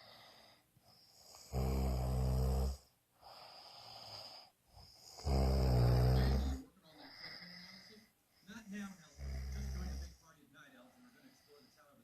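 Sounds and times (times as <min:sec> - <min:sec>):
quiet breath: 0:00.0 - 0:12.0
low-pitched snoring: 0:01.2 - 0:07.5, 0:09.0 - 0:10.2.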